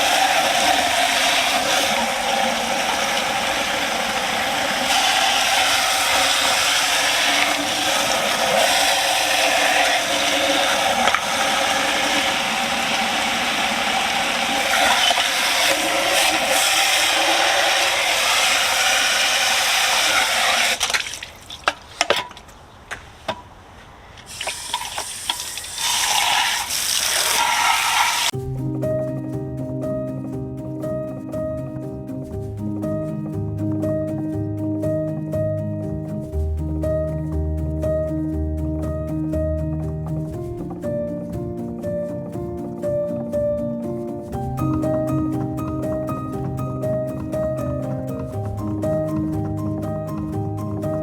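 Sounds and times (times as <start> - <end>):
garden hose spraying water: 0.0 - 22.1, 24.3 - 28.4.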